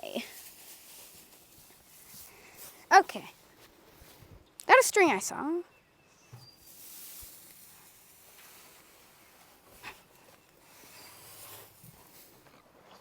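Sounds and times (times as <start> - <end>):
hay rustling: 0.0 - 4.2, 6.6 - 12.6.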